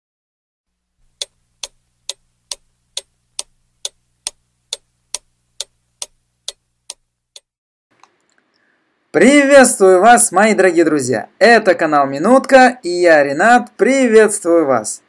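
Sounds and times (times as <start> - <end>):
faint low hum: 0.7 - 7.4
clock ticking: 1.0 - 7.5.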